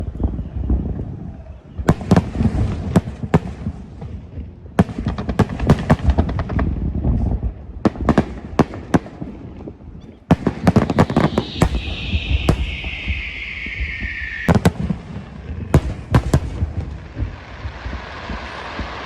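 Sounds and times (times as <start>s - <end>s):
fireworks sharp bangs: 4.8s - 19.0s
low rumble of distant bursts: 9.8s - 19.0s.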